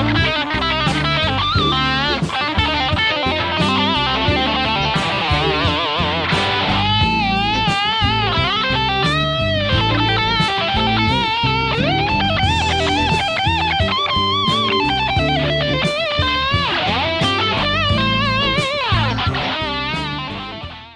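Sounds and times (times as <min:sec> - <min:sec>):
electric guitar lead melody: 0:00.0 - 0:20.9
rock music: 0:00.0 - 0:20.9.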